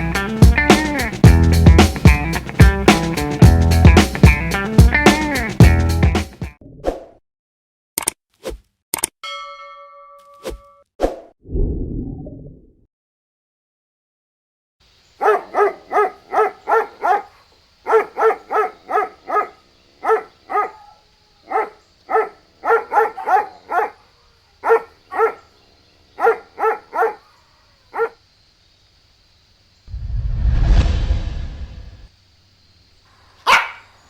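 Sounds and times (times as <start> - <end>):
faint steady hiss: 14.8 - 22.7, 24.0 - 29.9
dog barking: 15.2 - 25.5, 26.2 - 28.2, 33.4 - 34.0.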